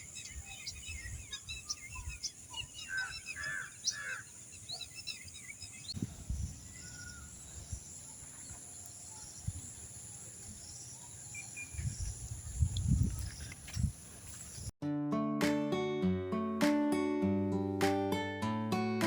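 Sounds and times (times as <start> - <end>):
birds chirping: 0.0 - 14.7.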